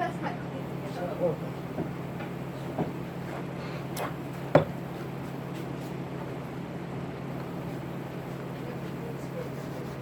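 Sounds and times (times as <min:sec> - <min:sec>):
steady low hum: 0:00.0 - 0:10.0
short knocks: 0:04.5 - 0:04.8.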